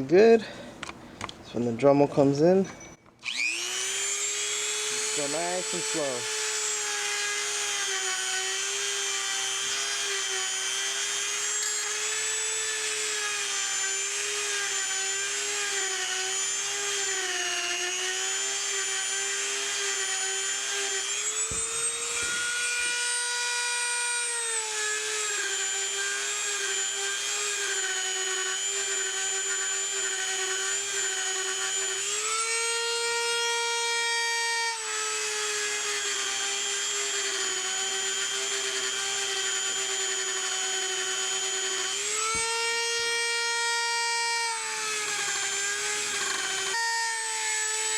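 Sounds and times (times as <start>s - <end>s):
rotary tool grinding whine: 2.4s - 47.9s.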